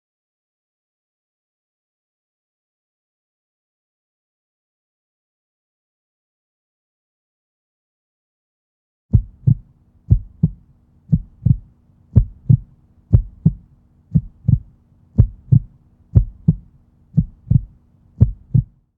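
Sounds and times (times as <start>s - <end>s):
heartbeat thumps: 9.1s - 18.8s
faint steady hum: 9.1s - 18.9s.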